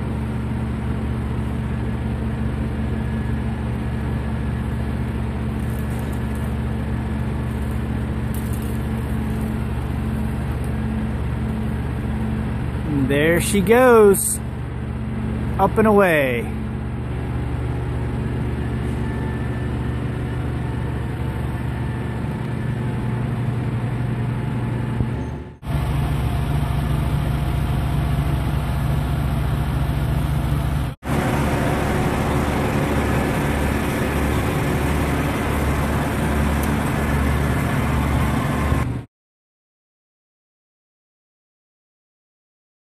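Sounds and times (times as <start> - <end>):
diesel machinery engine drone: 0.0 - 39.1.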